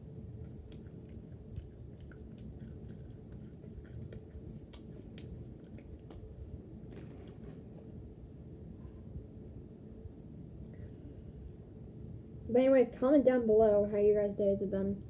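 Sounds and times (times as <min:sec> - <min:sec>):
steady low hum: 0:00.0 - 0:15.0
person chewing food: 0:00.4 - 0:07.8.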